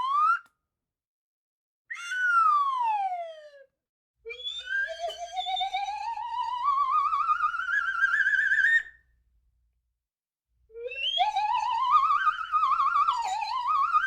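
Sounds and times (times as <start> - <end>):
whistle-like tone sliding down: 4.3 - 8.9, 10.8 - 14.0.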